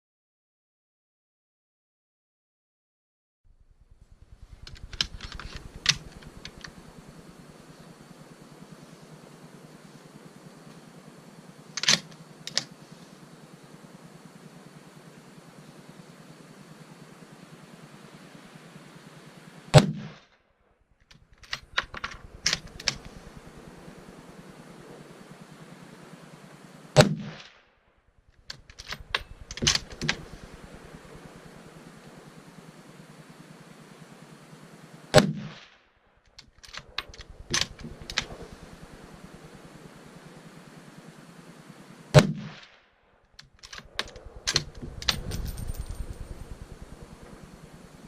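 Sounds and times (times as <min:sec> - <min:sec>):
sharp clicks and clacks: 0:04.5 - 0:06.8, 0:21.4 - 0:23.2, 0:28.5 - 0:30.5, 0:43.4 - 0:46.8
gunshot: 0:19.8 - 0:20.2, 0:27.0 - 0:27.5, 0:35.2 - 0:35.7, 0:42.2 - 0:42.7
quieter sharp cracks: 0:21.1 - 0:24.2, 0:28.4 - 0:31.6.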